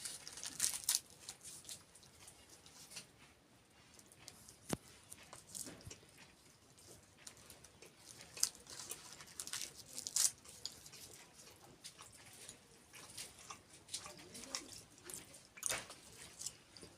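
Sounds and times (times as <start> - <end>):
person biting and chewing: 4.1 - 16.9.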